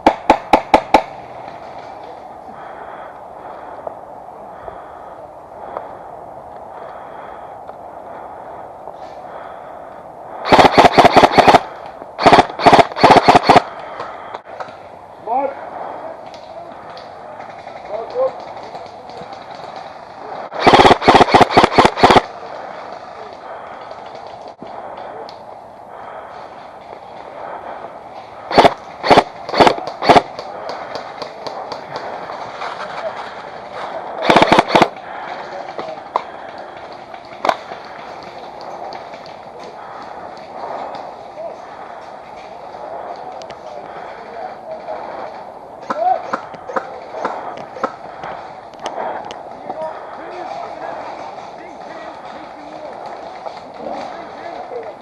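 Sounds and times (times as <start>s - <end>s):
airsoft gun firing bursts: 0.0s - 1.2s, 10.4s - 13.7s, 20.6s - 22.3s, 28.5s - 30.5s, 34.2s - 35.0s
rustling: 28.1s - 44.0s.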